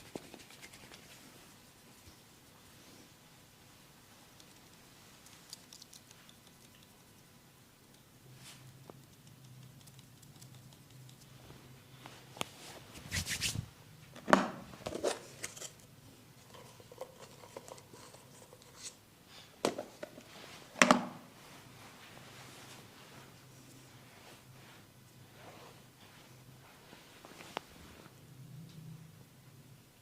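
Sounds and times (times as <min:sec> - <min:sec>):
hands scratching and rubbing head: 0:00.0 - 0:01.5, 0:08.4 - 0:13.7.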